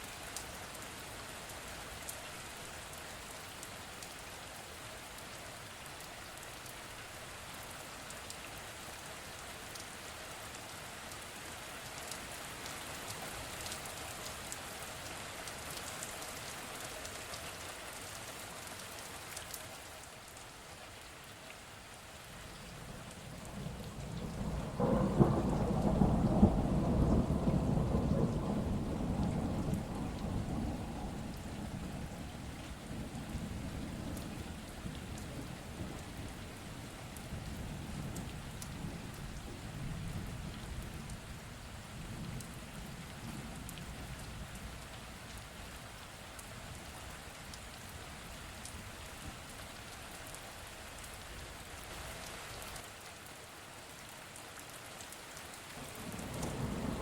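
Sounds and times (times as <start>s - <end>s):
heavy rain falling: 0.0s - 57.0s
rolling thunder: 23.2s - 36.6s, 55.8s - 57.0s.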